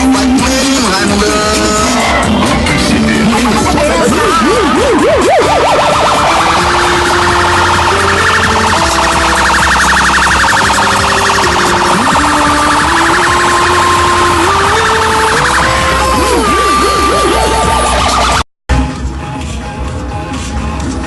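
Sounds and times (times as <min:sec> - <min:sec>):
loud electronic music: 0:00.0 - 0:21.0
siren wails: 0:03.4 - 0:18.5
warbling alarm-like tone: 0:03.6 - 0:18.4.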